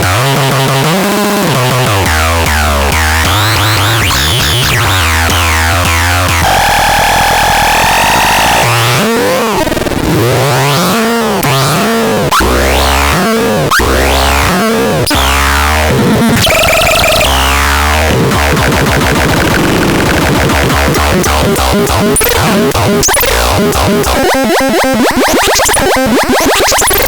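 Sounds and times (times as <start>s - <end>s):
low synth bass: 1.8s - 6.5s, 12.4s - 27.0s
harsh synthesizer sweeps: 12.6s - 27.0s.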